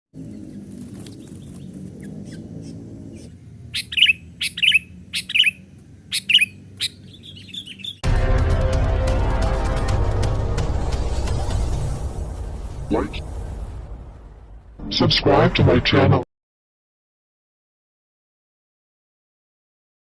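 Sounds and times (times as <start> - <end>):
bulbul sharp chirps: 3.2 - 8.0
music: 8.0 - 14.3.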